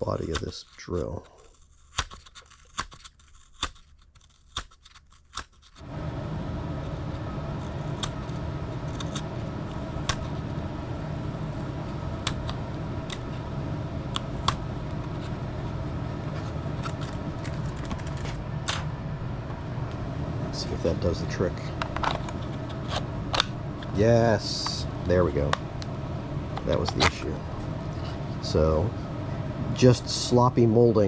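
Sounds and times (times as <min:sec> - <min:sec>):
knife clicking and scraping plastic: 0:00.0 - 0:05.8, 0:07.6 - 0:09.3, 0:16.3 - 0:18.9
steady low rumbling: 0:05.8 - 0:31.0.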